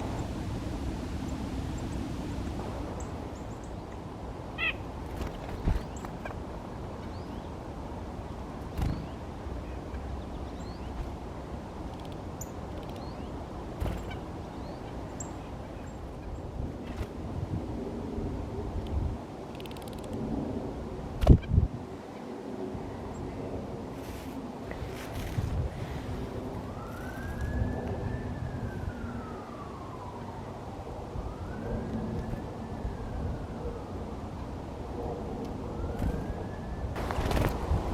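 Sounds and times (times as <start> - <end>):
songbirds chirping: 1.2 - 16.7
siren wailing: 26.6 - 34.1, 35.6 - 37.1.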